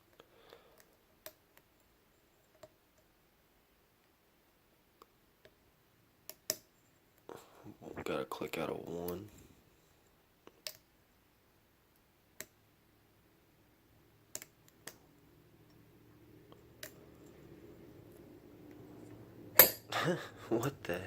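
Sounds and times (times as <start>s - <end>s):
padlock shackle springing open: 19.6s - 19.9s.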